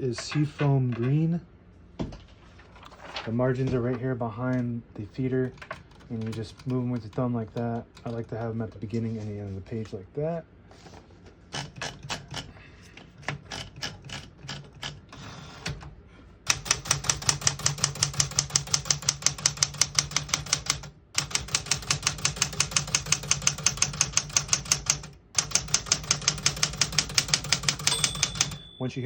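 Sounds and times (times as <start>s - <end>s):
manual typewriter typing: 5.4s - 9.0s, 11.5s - 12.5s, 13.1s - 15.8s, 16.5s - 28.9s.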